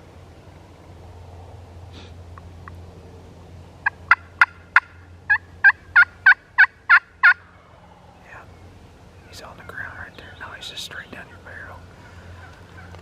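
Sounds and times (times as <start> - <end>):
wild turkey yelping: 3.8 - 7.9, 11.9 - 13.0.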